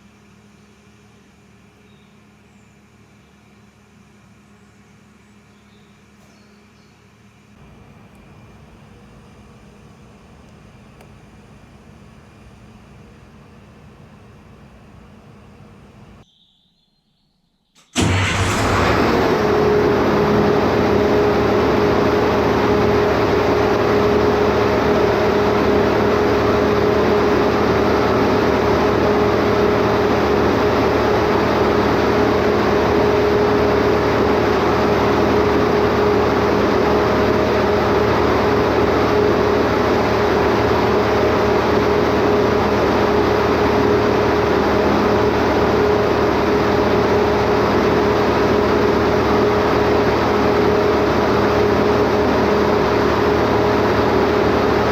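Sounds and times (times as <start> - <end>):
generator engine running: 17.8 - 54.9.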